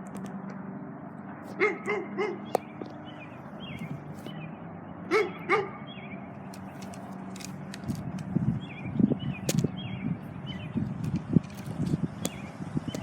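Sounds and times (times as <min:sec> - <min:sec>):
dog barking: 0:01.5 - 0:02.5, 0:05.1 - 0:05.9.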